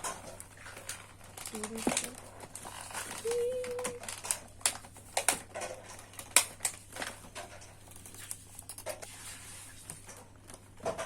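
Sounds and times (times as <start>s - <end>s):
plastic packaging clicks and taps: 3.6s - 9.0s.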